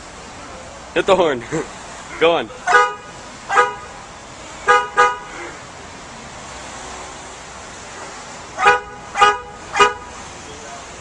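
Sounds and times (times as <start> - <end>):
car horn honks: 2.6 - 4.0, 4.6 - 5.4, 8.6 - 10.2.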